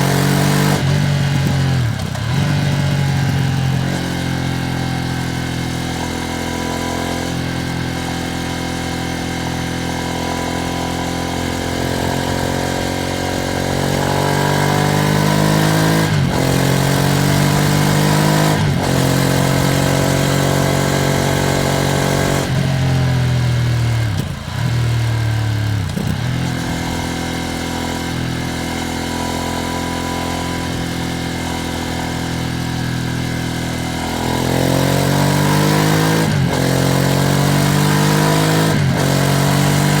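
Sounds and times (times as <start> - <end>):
motorcycle engine running: 0.0 - 40.0.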